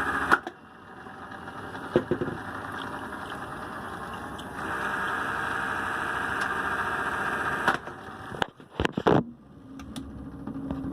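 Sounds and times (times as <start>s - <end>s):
pitching machine motor whirring: 0.0s - 8.4s.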